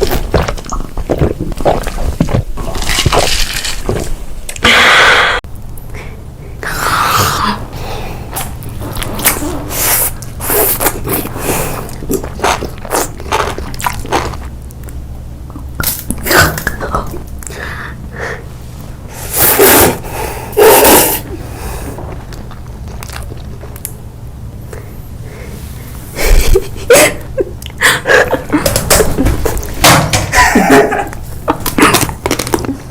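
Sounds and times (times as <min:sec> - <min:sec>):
crunching and chewing: 0:00.0 - 0:04.6, 0:10.1 - 0:15.0, 0:22.0 - 0:24.1, 0:31.5 - 0:32.8.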